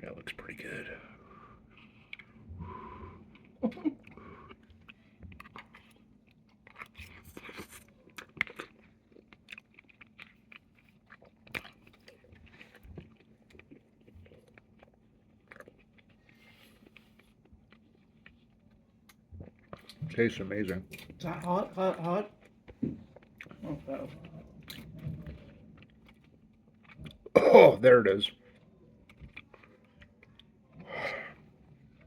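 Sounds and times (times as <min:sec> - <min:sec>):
person biting and chewing food: 0:04.5 - 0:20.0.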